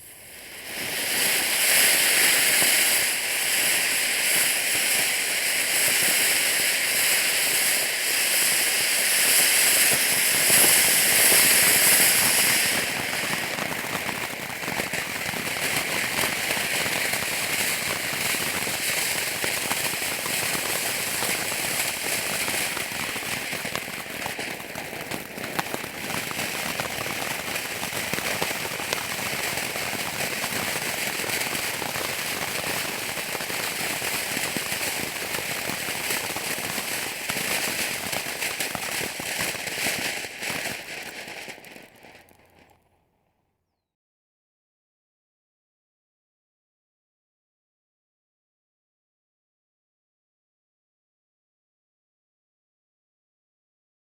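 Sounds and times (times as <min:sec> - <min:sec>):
firework fountain hissing: 0:00.0 - 0:42.7
dense crackling: 0:09.8 - 0:42.8.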